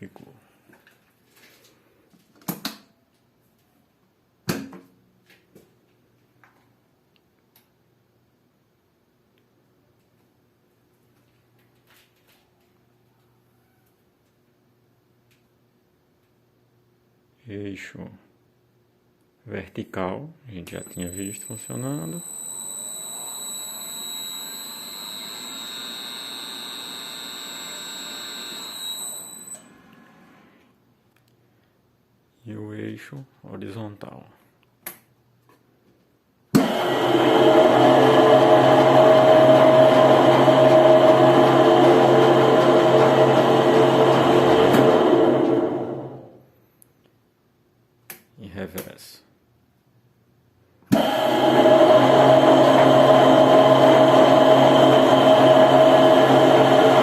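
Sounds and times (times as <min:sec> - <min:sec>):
milling machine motor whining: 0:20.8 - 0:30.5, 0:36.6 - 0:46.3, 0:50.9 - 0:57.0.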